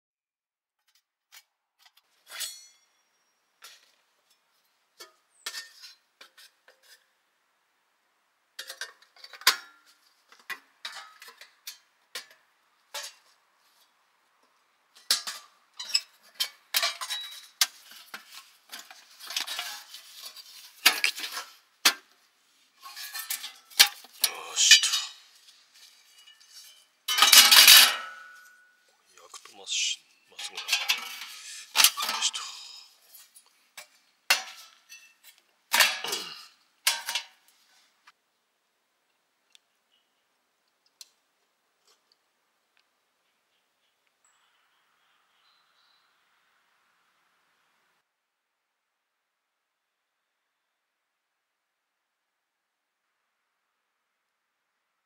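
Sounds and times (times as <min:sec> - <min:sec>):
metal camp gear clinking: 0:02.2 - 0:04.4, 0:15.0 - 0:21.6, 0:22.8 - 0:37.4.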